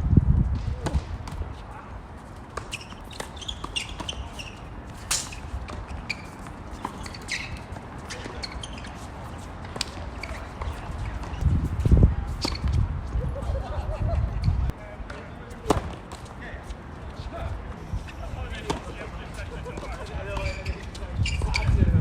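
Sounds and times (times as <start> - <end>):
wind rumble on microphone: 0.0 - 1.6, 10.7 - 14.8, 20.1 - 22.0.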